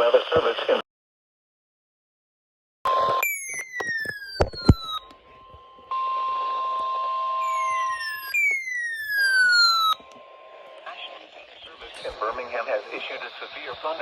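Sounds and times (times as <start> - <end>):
steady high alarm tone: 2.9 - 12.1
falling whistle-like sweeps: 7.4 - 10.0.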